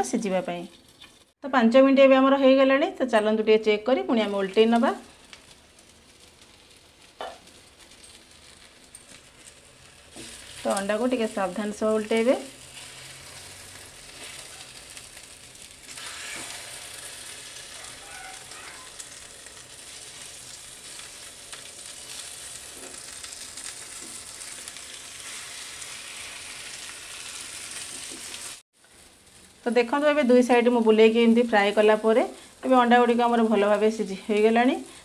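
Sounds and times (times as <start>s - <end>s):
food sizzling in a pan: 4.1s - 35.0s.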